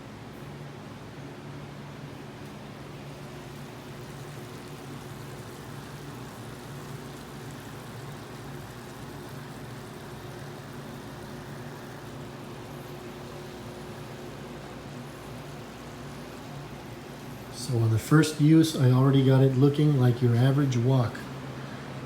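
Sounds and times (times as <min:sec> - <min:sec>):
food sizzling in a wok: 0:03.1 - 0:17.4.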